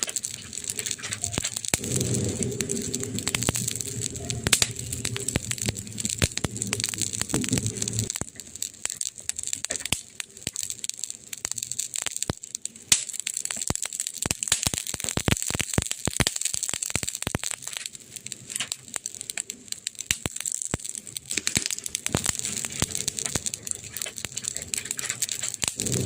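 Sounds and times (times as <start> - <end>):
burning wood crackling: 0.0 - 26.0
low steady rumble: 1.7 - 8.2, 23.2 - 26.0.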